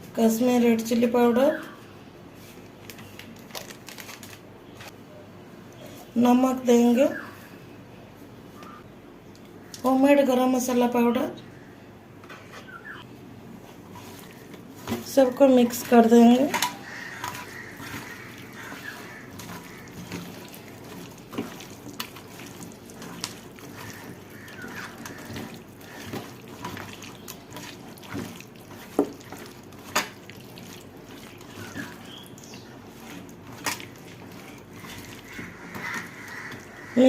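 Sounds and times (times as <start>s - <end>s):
wet squelching of marinade: 13.9s - 37.0s.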